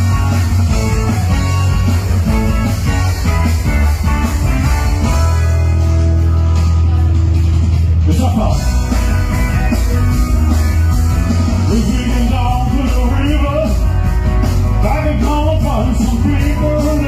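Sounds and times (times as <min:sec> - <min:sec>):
rock band with strong bass: 0:00.0 - 0:17.0
man singing: 0:11.6 - 0:13.9, 0:14.8 - 0:17.0.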